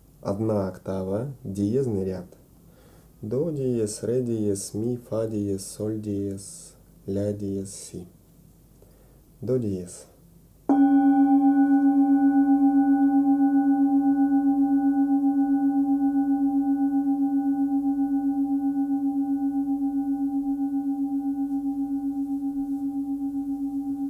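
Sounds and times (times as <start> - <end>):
singing bowl ringing: 10.7 - 24.0.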